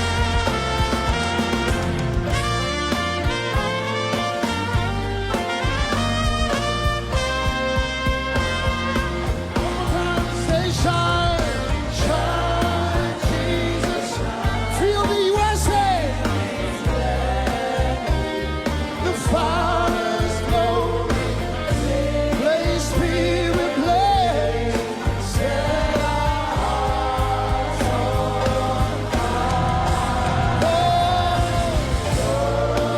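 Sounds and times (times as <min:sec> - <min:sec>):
band with bass and drums: 0:00.0 - 0:32.9
voices singing: 0:08.3 - 0:32.9.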